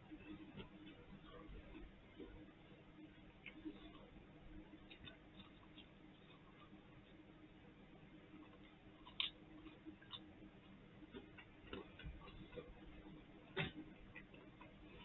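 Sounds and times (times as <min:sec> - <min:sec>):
chewing chicken wings: 0:08.3 - 0:15.0.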